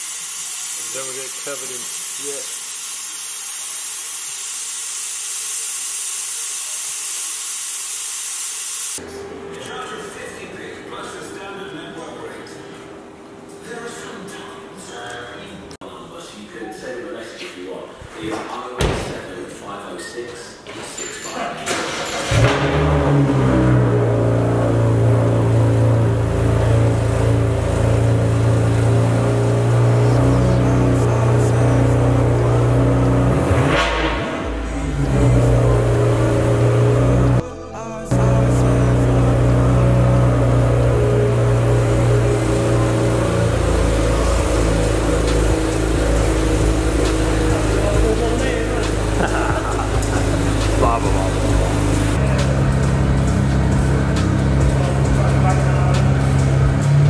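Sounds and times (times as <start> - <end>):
car engine running: 22.2 - 37.4, 38.1 - 57.0.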